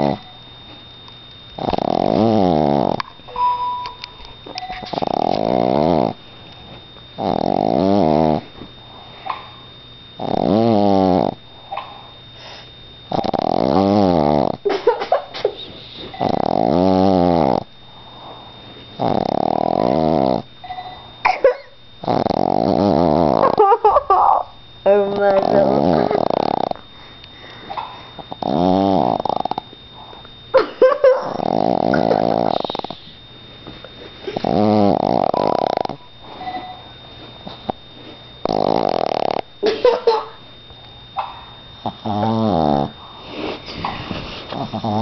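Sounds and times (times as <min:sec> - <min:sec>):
dog snoring: 0:00.0 - 0:00.4, 0:01.6 - 0:03.2, 0:04.4 - 0:09.4, 0:10.2 - 0:14.9, 0:15.6 - 0:21.3, 0:22.0 - 0:23.9, 0:24.9 - 0:30.3, 0:31.0 - 0:33.2, 0:34.2 - 0:36.8, 0:37.4 - 0:39.7, 0:41.8 - 0:45.0.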